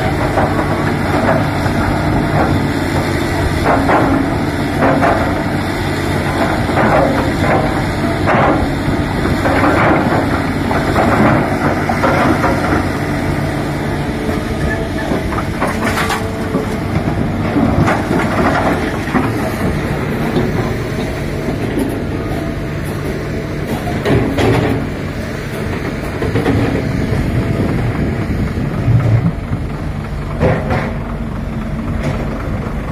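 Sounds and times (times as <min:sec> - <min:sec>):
excavator diesel engine running: 0:00.0 - 0:32.9.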